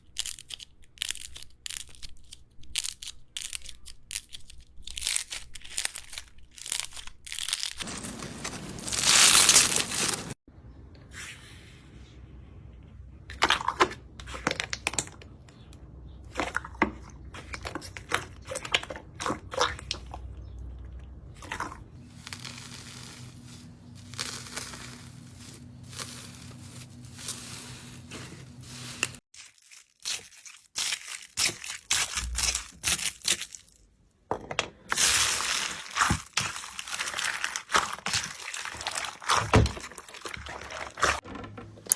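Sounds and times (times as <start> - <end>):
slime squeezed by hand crackling: 8.4 - 10.4.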